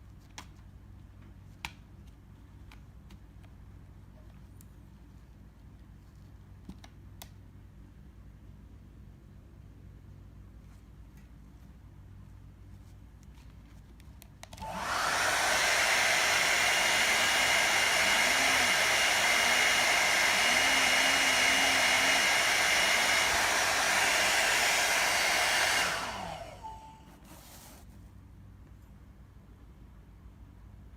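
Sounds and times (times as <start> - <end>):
hair dryer brush blowing: 14.6 - 27.8.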